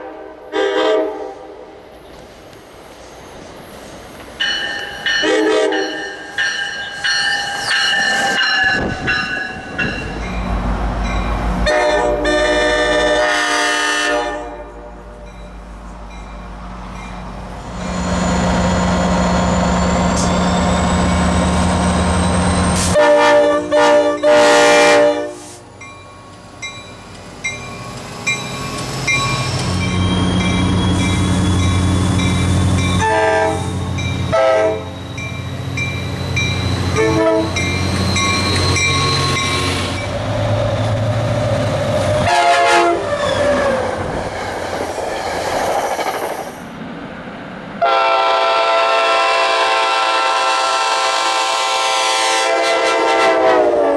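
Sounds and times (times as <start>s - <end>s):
locomotive horn blasts: 0.0s - 1.6s, 5.2s - 6.2s, 11.6s - 15.1s, 22.8s - 25.6s, 33.0s - 35.0s, 36.9s - 37.7s, 42.2s - 43.1s, 47.8s - 53.9s
train engine rumble: 0.0s - 53.9s
train cars rolling: 1.8s - 53.9s.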